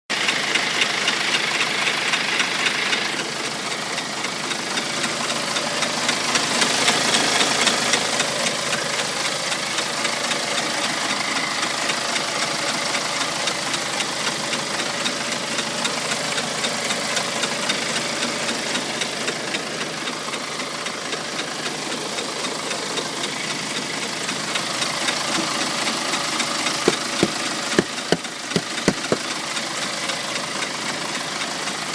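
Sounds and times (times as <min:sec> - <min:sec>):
diesel engine ticking: 0:00.1 - 0:31.9
engine knocks: 0:13.7 - 0:29.6.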